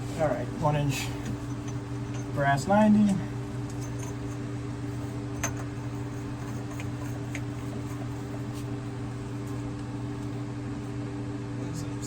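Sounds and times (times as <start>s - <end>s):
steady mechanical hum: 0.0s - 12.0s.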